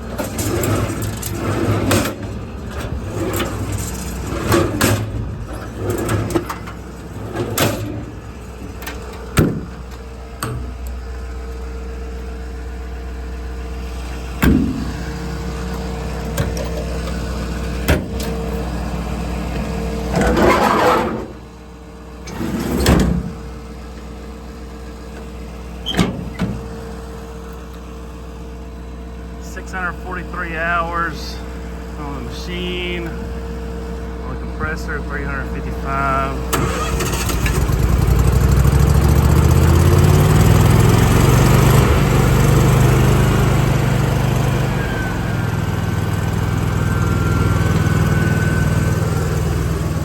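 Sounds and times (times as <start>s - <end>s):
engine idling: 0.0s - 20.3s, 23.1s - 50.0s
sharp knocks and clunks: 8.8s - 9.8s, 14.4s - 15.0s, 17.8s - 18.3s.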